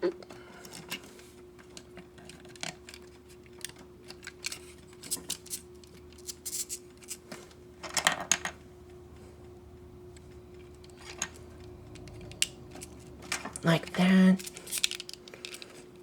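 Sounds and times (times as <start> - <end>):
faint steady hum: 0.0 - 16.0
plastic parts clicking and scraping: 0.6 - 8.5, 14.4 - 16.0.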